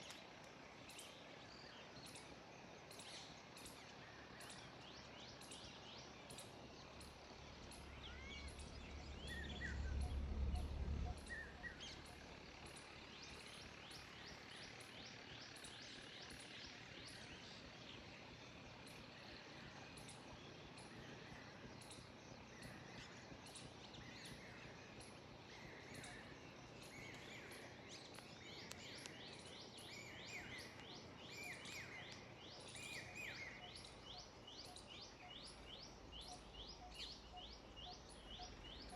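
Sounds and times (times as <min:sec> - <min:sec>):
faint birdsong chirps and trills: 0:00.0 - 0:38.9
low rumble: 0:07.4 - 0:14.4.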